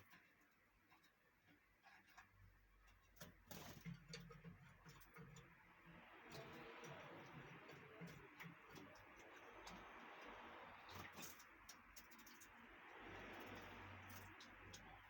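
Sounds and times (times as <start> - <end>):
low steady hum: 0.0 - 15.0
birds splashing in water: 3.3 - 15.0.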